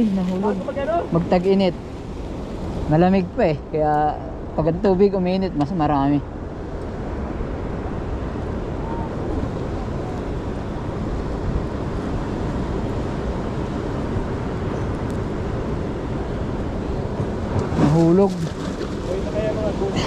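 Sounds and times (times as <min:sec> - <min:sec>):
ocean surf: 0:00.0 - 0:20.0
wind on microphone: 0:00.0 - 0:20.0.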